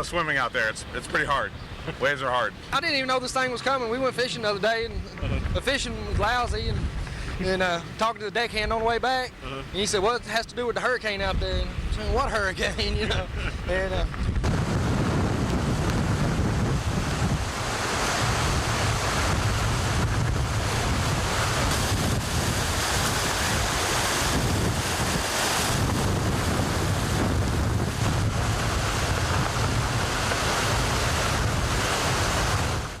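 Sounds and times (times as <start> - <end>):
wind buffeting microphone: 4.7 - 9.4, 10.6 - 33.0
breaking waves: 12.6 - 33.0.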